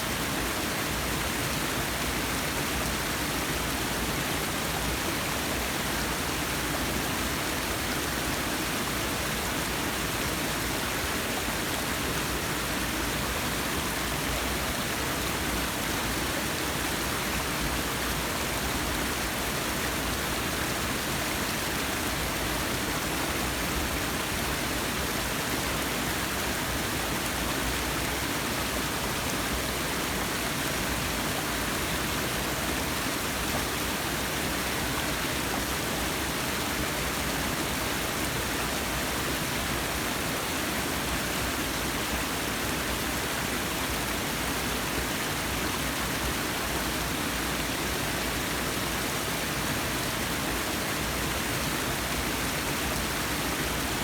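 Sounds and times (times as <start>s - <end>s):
waterfall rushing and splashing: 0.0s - 54.0s.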